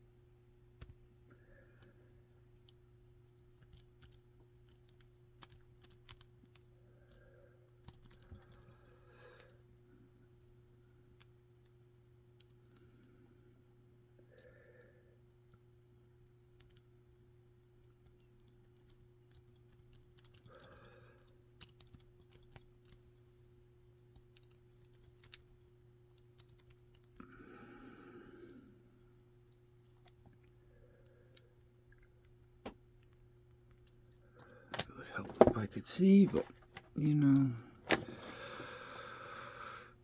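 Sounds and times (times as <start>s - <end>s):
steady low hum: 0.0s - 40.0s
rake clicking in padlock: 34.7s - 38.6s.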